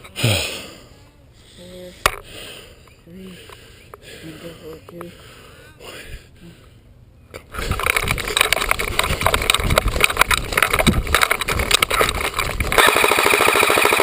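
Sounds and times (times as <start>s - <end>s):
rifle rattling as carried: 7.5s - 14.0s
airsoft gun rapid clicks: 7.7s - 14.0s.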